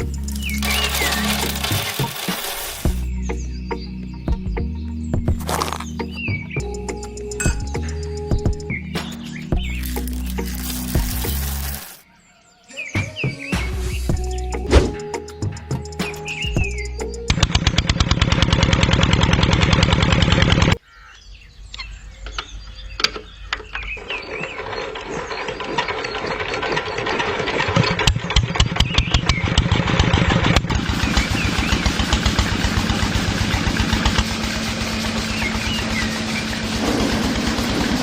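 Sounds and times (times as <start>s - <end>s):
tractor engine running: 0.0s - 3.5s, 5.2s - 12.0s, 15.6s - 20.8s, 24.0s - 38.0s.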